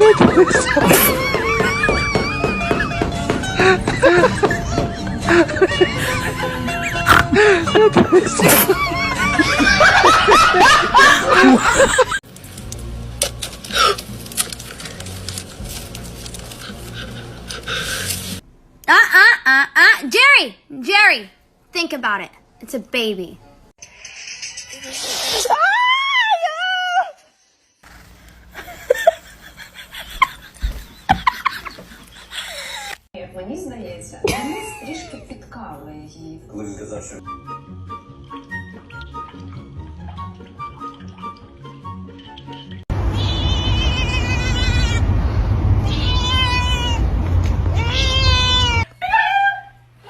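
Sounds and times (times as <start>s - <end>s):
people laughing: 0.0s - 12.2s, 28.6s - 33.0s.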